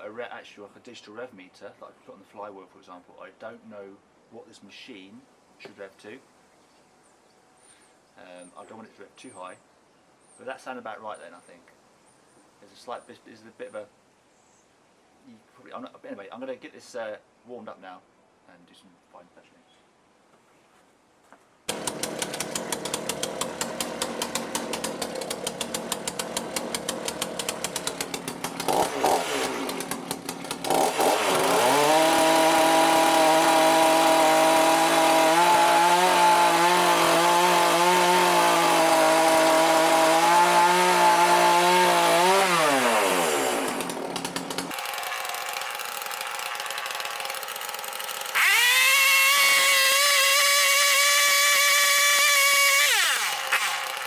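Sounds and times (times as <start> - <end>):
chainsaw engine idling and revving: 21.7 - 54.0.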